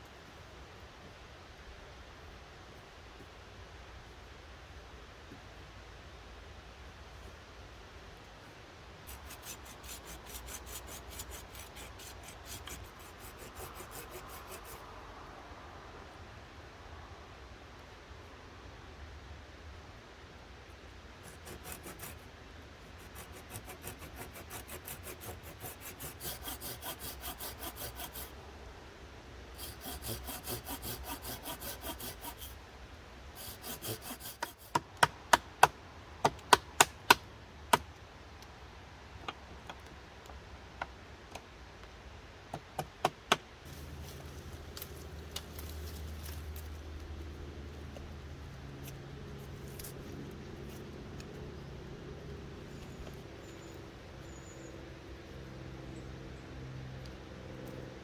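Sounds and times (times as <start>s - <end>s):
handsaw cutting wood: 9.1s - 14.8s, 21.2s - 22.2s, 23.0s - 28.3s, 29.6s - 32.6s, 33.4s - 34.8s.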